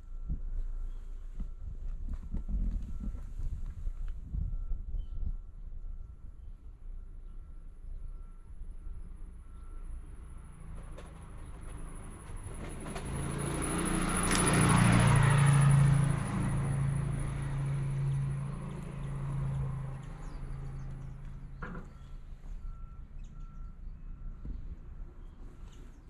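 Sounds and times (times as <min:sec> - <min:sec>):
faint broken beeping tone: 0:00.0 - 0:11.0, 0:21.8 - 0:25.4
vehicle passing by: 0:10.4 - 0:23.6.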